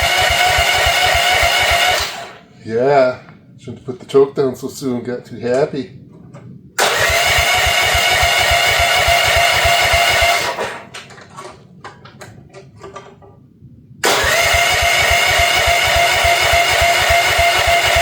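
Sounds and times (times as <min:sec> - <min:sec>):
engine cranking with starter whine: 0:00.0 - 0:02.5, 0:06.8 - 0:11.5, 0:14.0 - 0:18.0.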